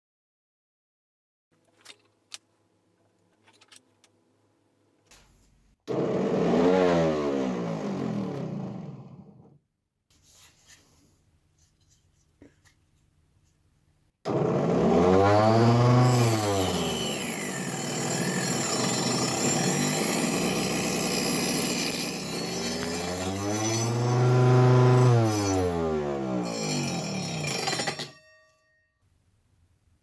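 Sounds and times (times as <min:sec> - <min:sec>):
saw blade cutting wood: 0:05.9 - 0:09.3, 0:14.3 - 0:28.2
table saw whine: 0:05.9 - 0:09.5, 0:14.3 - 0:28.2.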